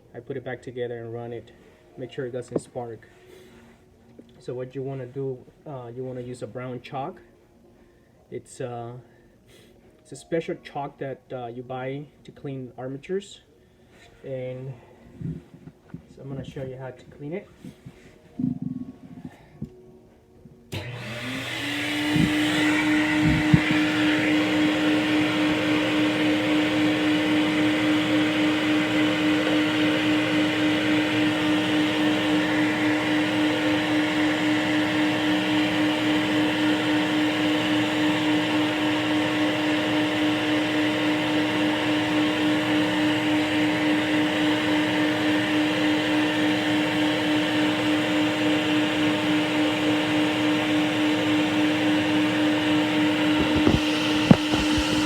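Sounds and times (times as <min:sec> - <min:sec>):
electric motor humming: 0:20.7 - 0:55.0.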